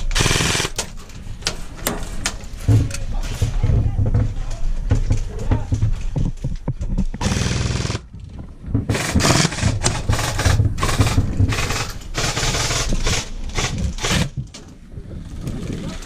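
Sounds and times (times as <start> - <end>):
airsoft machine gun firing bursts: 0.0 - 0.8, 7.2 - 8.0, 8.9 - 14.4.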